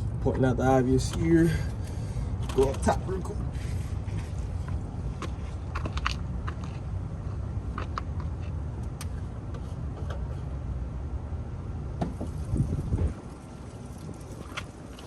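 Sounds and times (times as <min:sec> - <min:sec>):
microphone handling rumble: 0:12.0 - 0:13.4.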